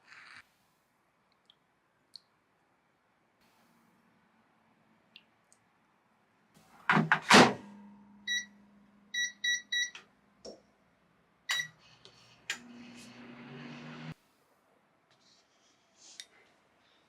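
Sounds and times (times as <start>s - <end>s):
keypad beeping: 9.2s - 10.0s, 11.5s - 11.8s.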